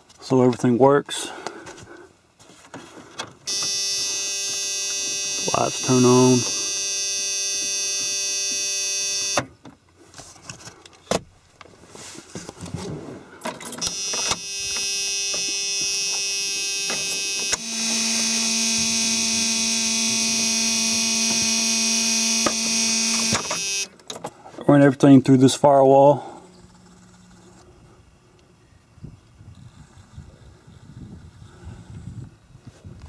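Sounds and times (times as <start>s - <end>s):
electrical buzz: 3.5s - 9.5s, 13.7s - 23.9s
low steady tone: 3.5s - 9.5s.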